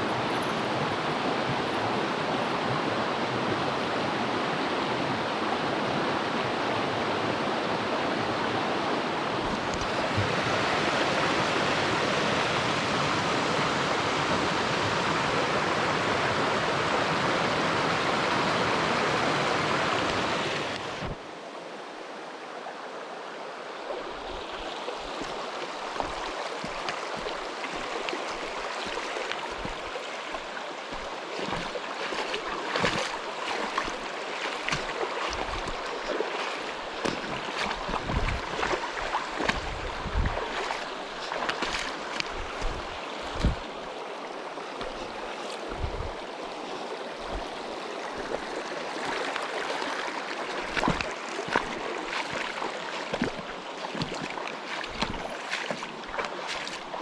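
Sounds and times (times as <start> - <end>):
stream rushing: 0.0 - 57.0
knocks and splashy thumps: 28.9 - 43.7, 44.8 - 46.2, 50.7 - 57.0.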